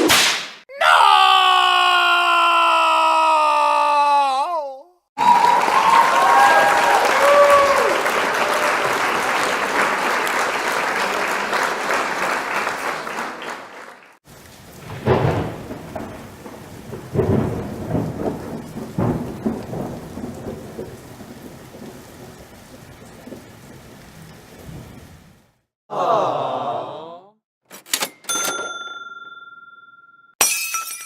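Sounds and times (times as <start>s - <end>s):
applause: 5.2s - 14.2s
steady rain: 5.4s - 11.4s, 14.2s - 25.7s
thunder rumbling: 14.3s - 25.3s.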